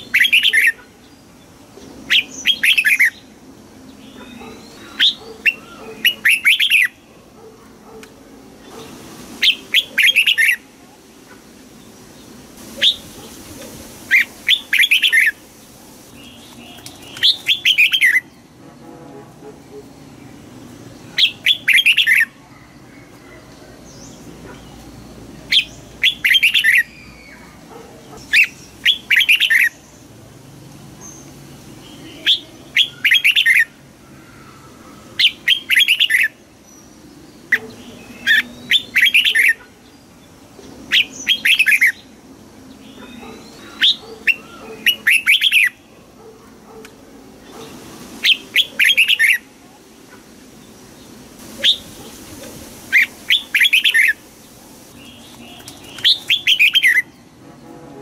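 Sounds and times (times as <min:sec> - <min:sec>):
bird singing whistled phrases: 0:32.2 - 0:33.7.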